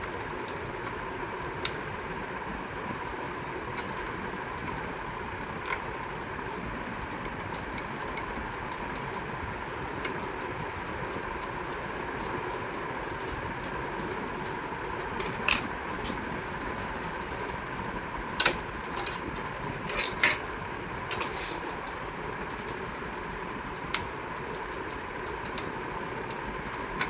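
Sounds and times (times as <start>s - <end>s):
steady background hum: 0.0s - 27.0s.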